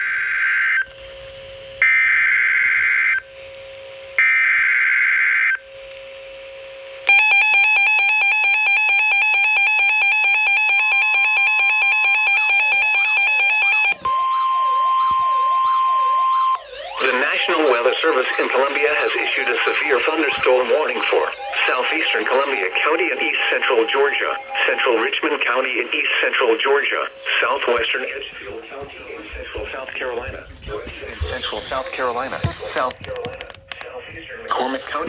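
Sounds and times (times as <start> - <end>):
screechy digital data bursts: 15.7 - 25.2
warbling siren-like sweeps: 16.5 - 25.1
rapidly pulsing alert tone: 16.6 - 25.1.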